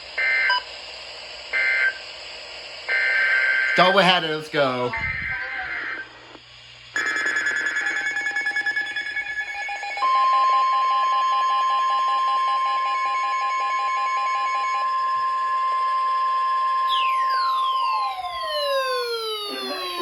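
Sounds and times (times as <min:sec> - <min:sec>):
steady warning alarm tone: 0:00.1 - 0:00.7, 0:01.5 - 0:02.1, 0:02.8 - 0:06.1, 0:06.9 - 0:20.0
rapid pulsing electronic tones: 0:06.9 - 0:15.8, 0:16.6 - 0:20.0.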